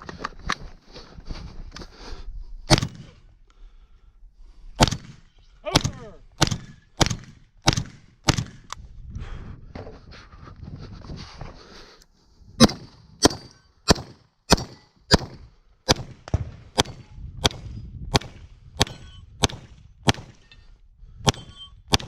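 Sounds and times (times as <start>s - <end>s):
pistol shots: 2.7s - 3.1s, 4.8s - 8.7s, 12.6s - 20.4s, 21.3s - 22.0s
bullets ringing on steel targets: 12.6s - 15.3s.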